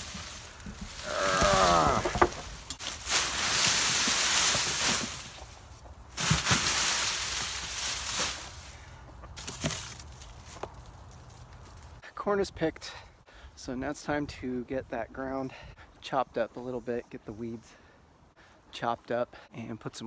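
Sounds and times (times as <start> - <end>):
dry corn stalks rustling: 0.0 - 12.0.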